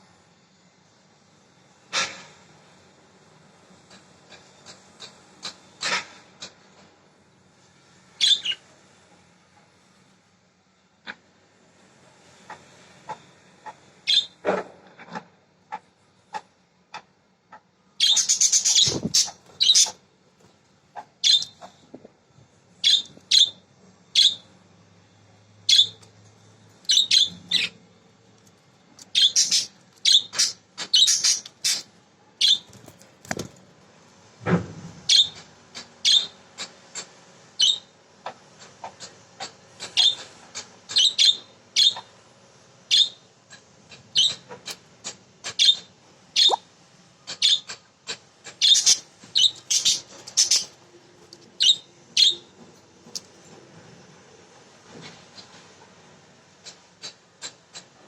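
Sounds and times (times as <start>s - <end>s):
budgerigars chirping: 8.2s - 8.6s, 18.0s - 20.0s, 21.2s - 21.7s, 22.8s - 23.6s, 24.2s - 24.4s, 25.7s - 26.0s, 26.9s - 27.8s, 29.0s - 31.8s, 32.4s - 32.8s, 36.0s - 36.3s, 37.6s - 37.8s, 41.0s - 42.1s, 42.9s - 43.2s, 44.2s - 44.4s, 45.6s - 45.8s, 46.4s - 46.6s, 47.4s - 47.7s, 48.6s - 50.8s, 51.6s - 52.5s.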